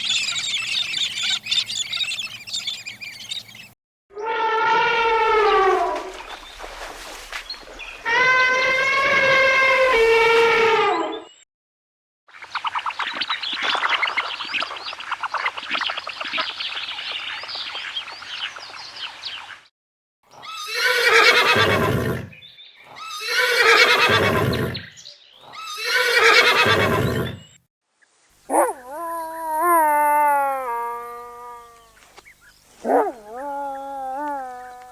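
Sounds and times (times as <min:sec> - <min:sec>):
high wavering animal call: 0:04.2 - 0:06.2.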